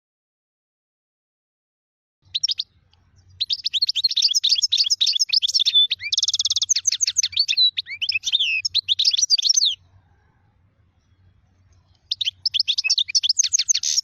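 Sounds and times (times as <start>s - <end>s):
finch singing: 2.2s - 10.2s, 11.0s - 14.0s.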